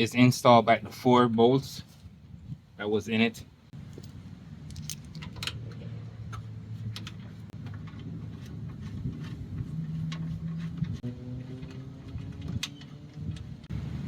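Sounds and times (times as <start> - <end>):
light clicks of tools and bolts: 3.8 - 9.3, 10.0 - 13.7.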